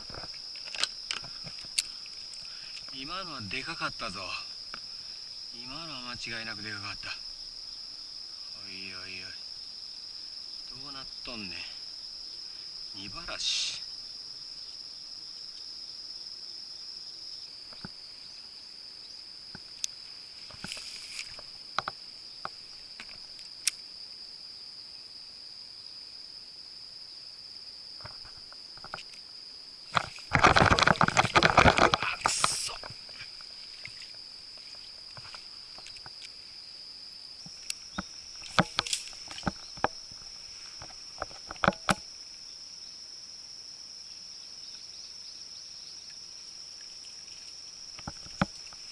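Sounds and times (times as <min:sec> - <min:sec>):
high-pitched insect drone: 0:00.0 - 0:48.9
burst of noise: 0:30.3 - 0:33.0.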